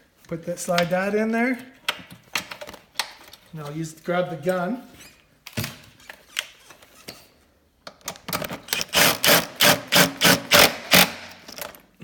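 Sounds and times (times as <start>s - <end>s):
impact gun bursts: 8.8s - 11.4s.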